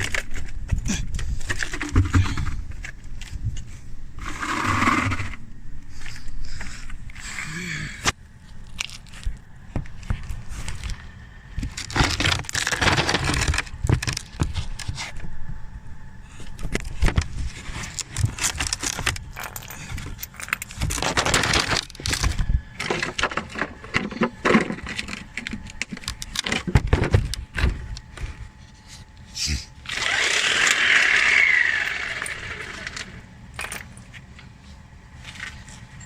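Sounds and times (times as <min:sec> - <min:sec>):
metallic clinks and rattles of tools: 0:17.9 - 0:26.6, 0:31.8 - 0:34.2.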